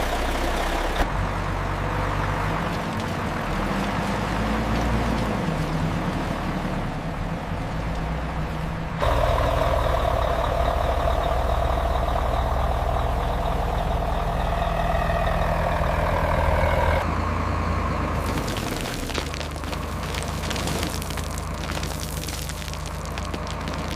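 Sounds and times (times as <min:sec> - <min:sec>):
heavy truck engine running: 0:00.0 - 0:23.9
crackling noise: 0:18.2 - 0:23.9.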